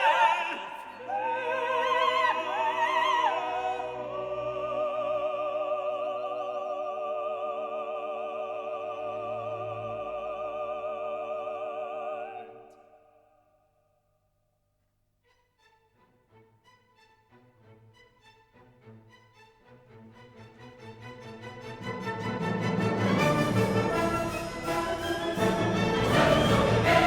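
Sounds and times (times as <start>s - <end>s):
operatic singing: 0.0s - 13.2s, 20.2s - 27.0s.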